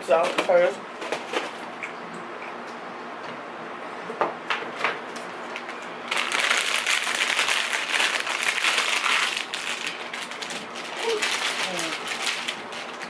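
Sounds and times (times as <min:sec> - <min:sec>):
packaging crinkling: 0:05.6 - 0:13.0.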